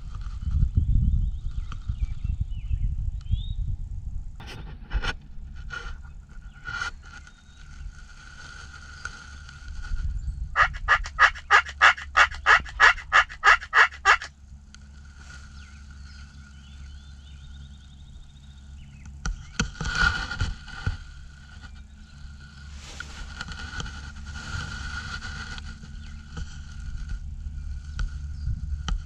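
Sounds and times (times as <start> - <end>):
turkey yelping: 10.6 - 14.3.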